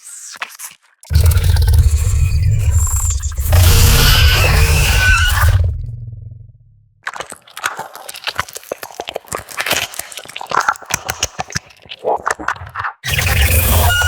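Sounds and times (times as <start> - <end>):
wet clicking and chittering: 0.4 - 5.8, 7.0 - 14.0
creature squeaks: 1.1 - 5.7, 13.0 - 14.0
noisy creature sound: 1.1 - 6.4, 13.0 - 14.0.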